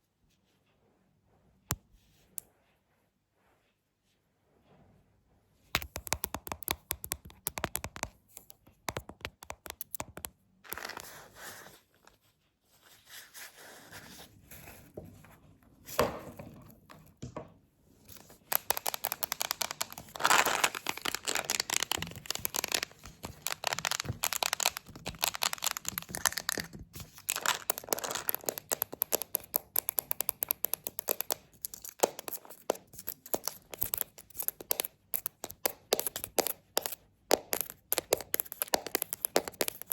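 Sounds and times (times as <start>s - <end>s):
fingernail tapping: 5.8s - 10.3s, 27.6s - 39.9s
scratching and crinkling: 18.1s - 39.9s.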